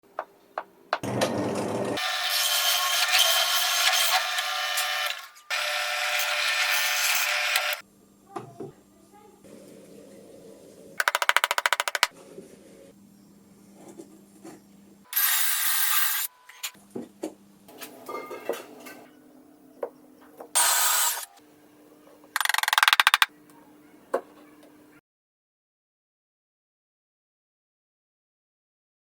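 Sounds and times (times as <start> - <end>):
power tool bursts: 20.6 - 21.3.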